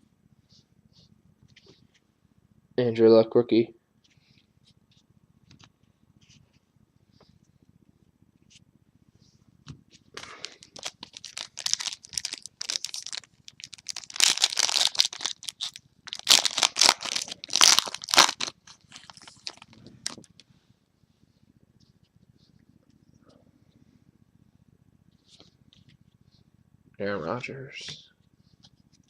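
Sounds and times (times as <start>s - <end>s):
wrapper tearing and crinkling: 10.2s - 20.3s.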